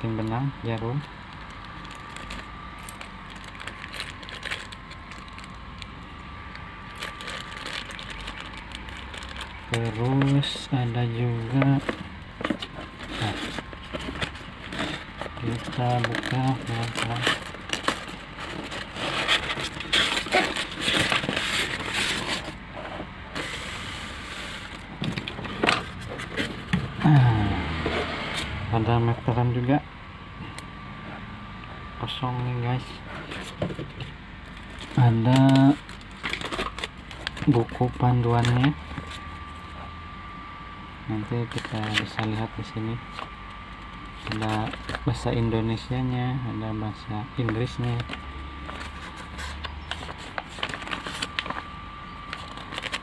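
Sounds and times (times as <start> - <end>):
faint steady hum: 0.0 - 53.0
plastic packets clicking and rustling: 0.7 - 10.5, 11.4 - 22.6, 34.5 - 39.2, 41.5 - 42.4, 44.2 - 45.3, 47.4 - 53.0.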